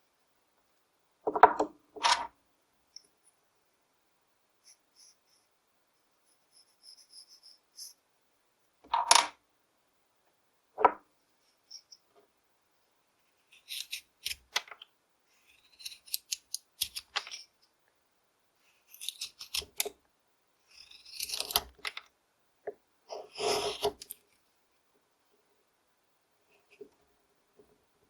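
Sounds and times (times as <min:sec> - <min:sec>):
knife slicing wood shavings: 0:13.5 - 0:14.5, 0:18.9 - 0:19.8, 0:20.8 - 0:21.7.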